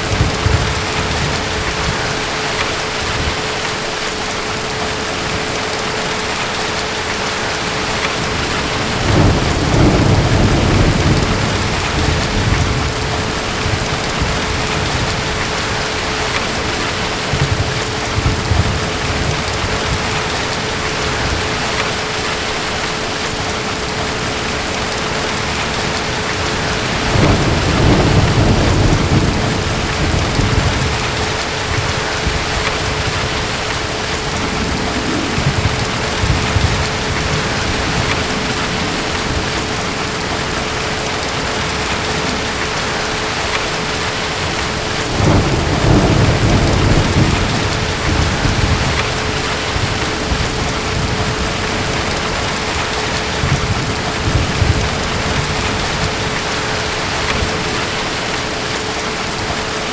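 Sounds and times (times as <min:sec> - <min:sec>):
steady rain: 0:00.0 - 0:59.9
thunder rumbling: 0:00.0 - 0:59.9.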